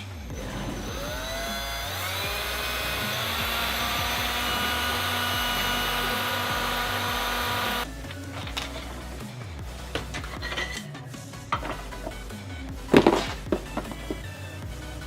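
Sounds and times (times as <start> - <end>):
electric drill whining: 0.3 - 7.9.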